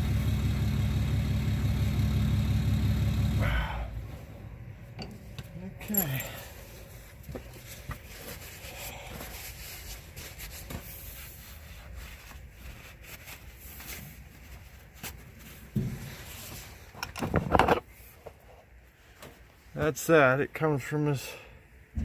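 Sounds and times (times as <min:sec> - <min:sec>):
rubber hose rubbing and handling: 0:06.5 - 0:19.8.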